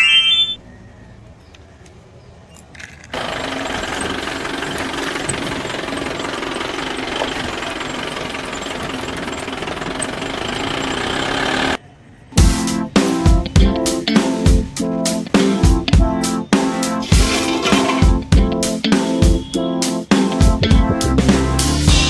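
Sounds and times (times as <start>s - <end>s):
engine-like mechanical noise: 0.6s - 12.4s.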